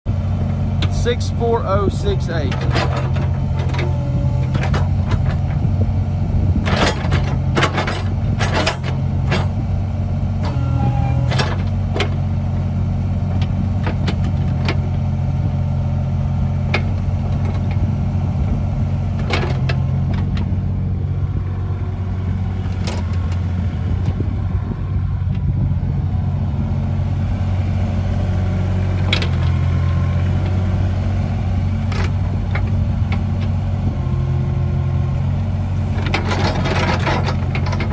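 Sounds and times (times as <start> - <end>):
excavator diesel engine running: 0.1 - 37.9
metal clanks and knocks: 2.4 - 5.7, 6.6 - 9.6, 10.4 - 12.2, 36.0 - 37.9.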